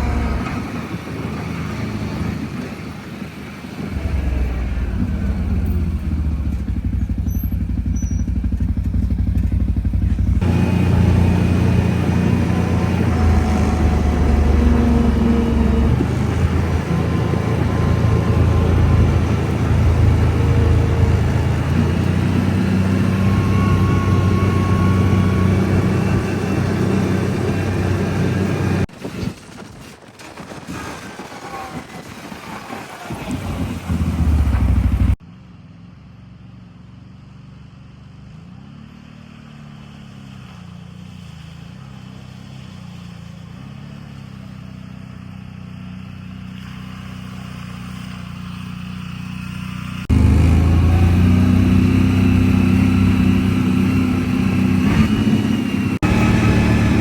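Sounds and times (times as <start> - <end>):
atv engine revving: 0.0 - 2.7, 3.8 - 28.9, 33.2 - 35.2, 47.2 - 57.0.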